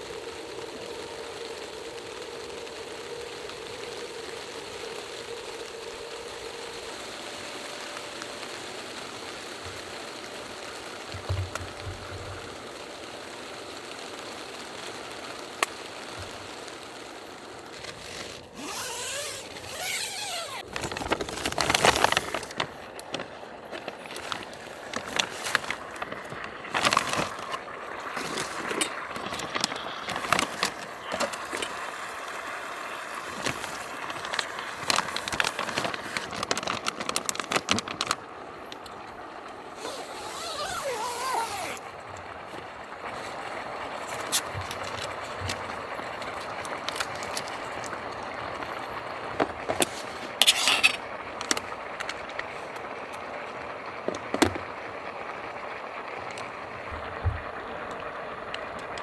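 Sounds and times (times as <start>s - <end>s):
meal pack fizzing and crackling: 0.0s - 59.0s
plastic bag rustling and clicking: 17.6s - 32.1s, 33.0s - 39.1s, 39.8s - 54.8s.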